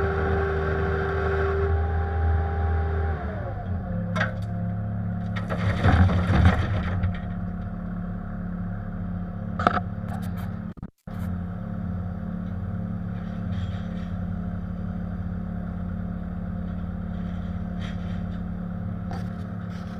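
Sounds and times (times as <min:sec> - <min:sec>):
diesel engine running: 0:00.0 - 0:19.9
scraping and clatter: 0:05.2 - 0:07.4, 0:13.1 - 0:14.2, 0:16.6 - 0:18.5.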